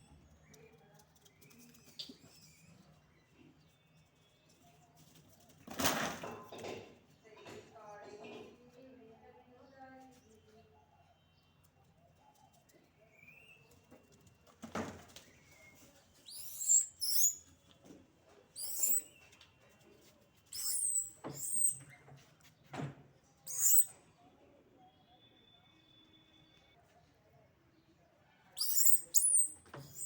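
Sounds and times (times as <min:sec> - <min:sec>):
monkeys squealing: 0:16.3 - 0:17.4, 0:18.6 - 0:19.0, 0:20.6 - 0:21.8, 0:23.5 - 0:23.9, 0:28.6 - 0:30.0.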